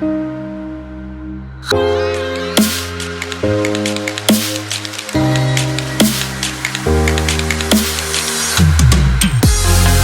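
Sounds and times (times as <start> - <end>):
synth chords over bass: 0.1 - 10.0.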